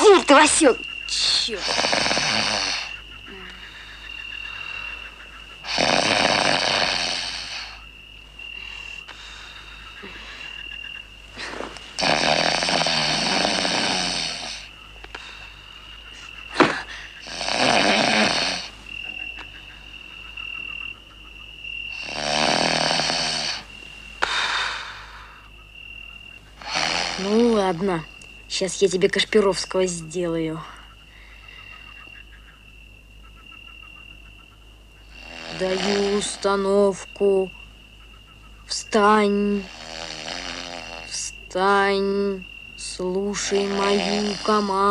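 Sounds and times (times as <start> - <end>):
man snoring heavily: 1.6 - 3.0, 5.6 - 7.8, 11.4 - 14.7, 16.6 - 18.7, 21.9 - 23.7, 26.6 - 27.5, 35.1 - 36.5, 39.6 - 41.2.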